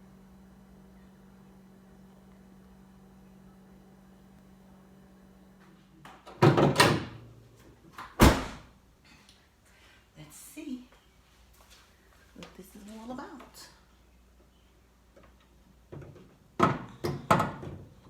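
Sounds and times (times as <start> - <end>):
steady low hum: 0.0 - 6.3.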